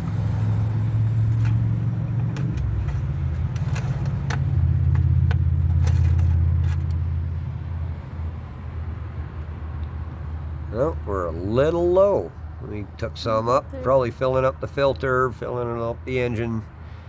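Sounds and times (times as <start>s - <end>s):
car engine running: 0.0s - 7.8s.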